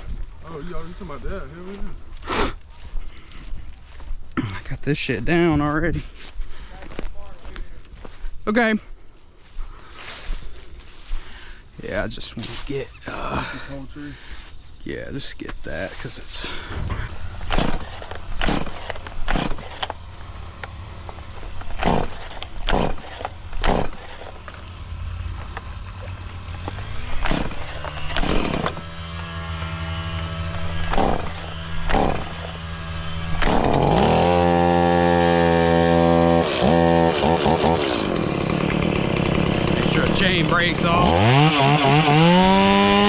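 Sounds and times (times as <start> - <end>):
chainsaw idling and revving: 16.3 - 43.0.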